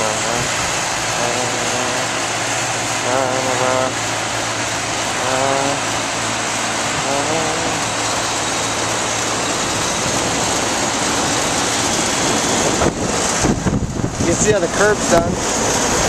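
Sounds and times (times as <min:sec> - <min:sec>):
low even hum: 0:00.0 - 0:16.0
whooshing fan noise: 0:00.0 - 0:16.0.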